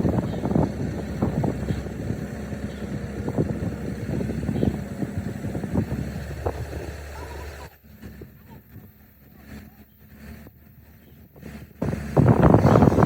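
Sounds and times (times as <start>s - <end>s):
motor running: 0.0s - 7.7s.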